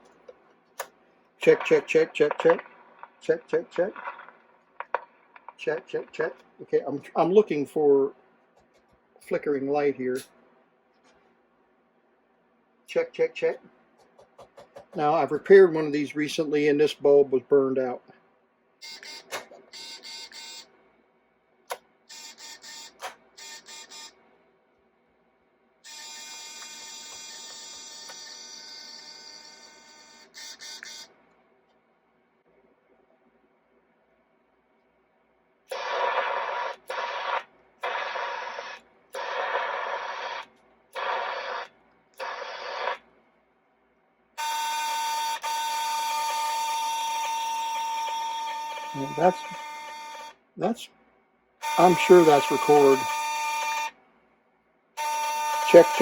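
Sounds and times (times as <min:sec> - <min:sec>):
dictation machine buzzing: 0:25.9 - 0:31.1, 0:44.4 - 0:50.3, 0:51.6 - 0:53.9, 0:55.0 - 0:56.0.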